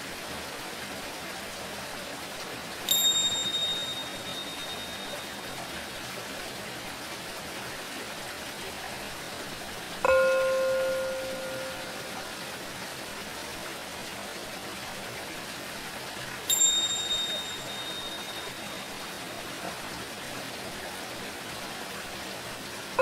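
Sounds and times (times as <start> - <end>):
singing bowl ringing: 2.9 - 5.8, 10.0 - 12.5, 16.5 - 19.4
tingsha high clear ring: 2.9 - 6.0, 10.0 - 12.6, 16.5 - 19.8.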